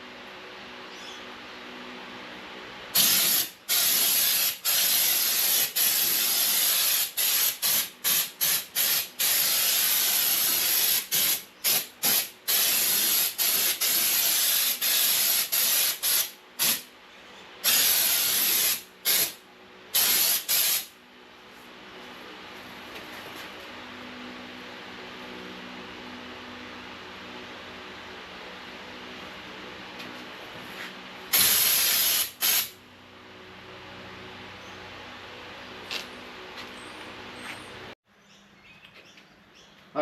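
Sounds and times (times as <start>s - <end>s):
spray gun hissing: 3.0s - 16.8s, 17.6s - 19.4s, 20.0s - 20.9s, 31.3s - 32.7s.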